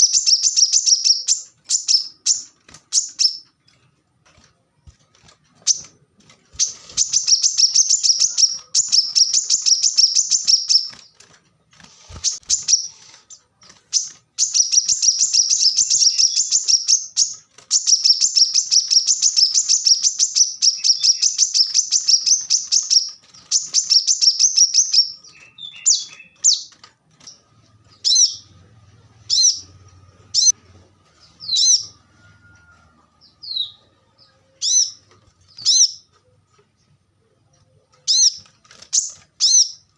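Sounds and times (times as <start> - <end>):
bird trilled chattering song: 0.0 - 3.4, 6.6 - 11.2, 13.9 - 26.7.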